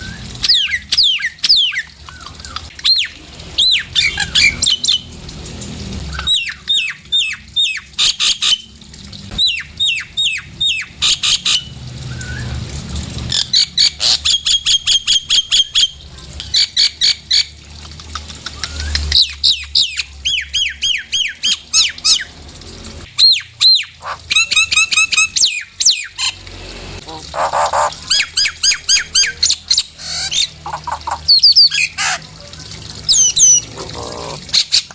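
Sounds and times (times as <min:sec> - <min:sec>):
myna whistling calls: 0:09.3 - 0:12.6, 0:18.4 - 0:22.3, 0:23.2 - 0:26.3, 0:27.1 - 0:32.3, 0:33.0 - 0:34.9.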